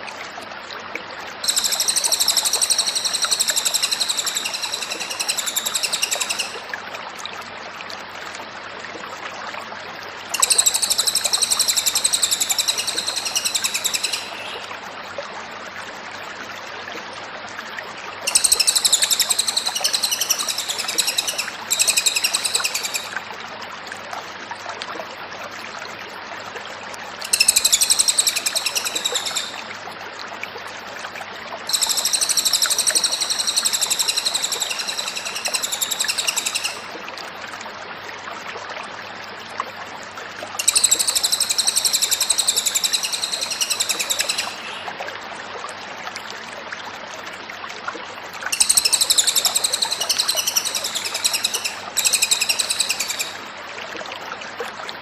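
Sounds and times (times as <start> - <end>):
songbird trilling: 1.4 - 6.6, 10.3 - 14.7, 18.3 - 23.2, 27.2 - 29.6, 31.7 - 36.9, 40.6 - 44.8, 48.5 - 53.4.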